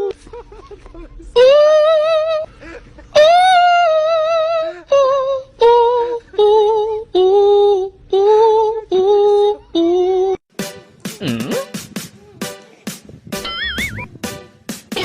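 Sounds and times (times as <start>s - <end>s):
high singing voice with vibrato: 3.2s - 10.4s.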